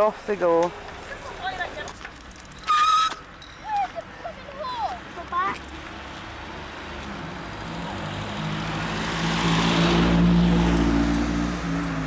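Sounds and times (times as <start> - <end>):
vehicle engine passing by: 5.8 - 12.0.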